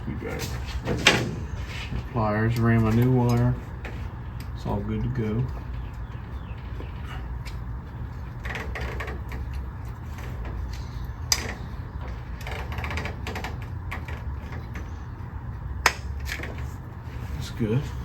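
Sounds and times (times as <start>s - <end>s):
steady low hum: 0.0s - 18.0s
tools clicking and rattling: 2.5s - 14.9s.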